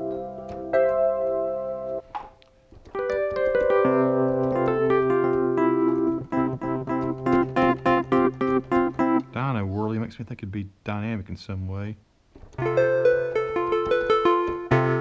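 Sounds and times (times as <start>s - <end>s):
electric piano playing: 0.0s - 9.8s, 12.6s - 15.0s.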